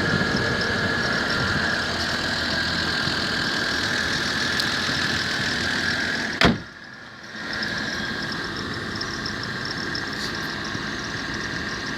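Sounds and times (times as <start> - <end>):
car engine idling: 0.0 - 11.9
loud thump: 6.4 - 6.7.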